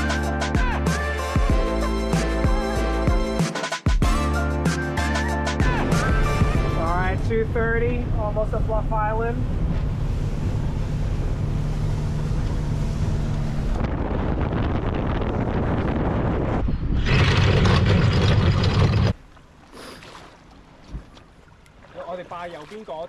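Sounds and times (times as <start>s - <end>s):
speedboat engine running: 4.3s - 19.2s
water rushing past hull: 5.6s - 23.0s
wind buffeting microphone: 6.6s - 19.1s.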